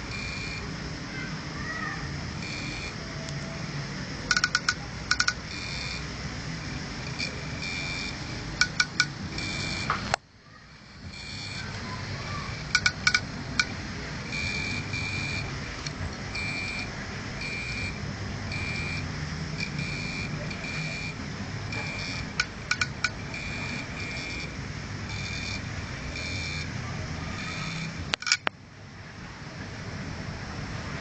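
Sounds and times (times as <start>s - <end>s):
hard drive buzzing chirps: 0.0s - 0.8s, 1.6s - 28.5s
steady hum: 0.0s - 31.0s
hard drive head clicking: 4.3s - 6.0s, 7.0s - 10.2s, 12.5s - 13.8s, 21.7s - 24.4s.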